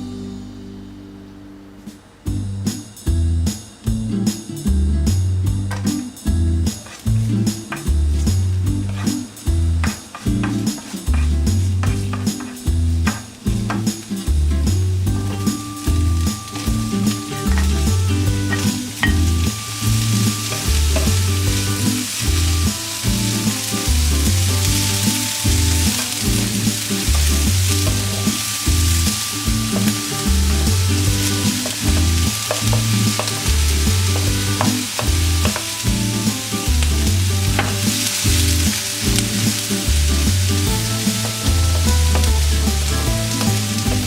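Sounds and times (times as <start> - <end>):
background music with bass line: 0.0 - 44.0
meat sizzling in a pan: 5.9 - 44.0.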